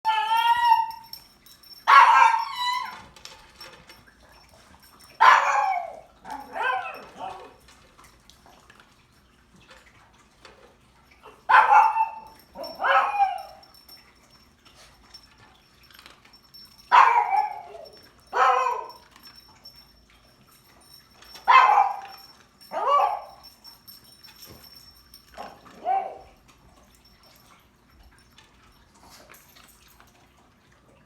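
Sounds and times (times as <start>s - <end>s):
dog barking drawn-out: 1.9s - 2.7s, 5.2s - 7.5s, 11.5s - 13.5s, 16.9s - 18.9s, 21.5s - 23.4s.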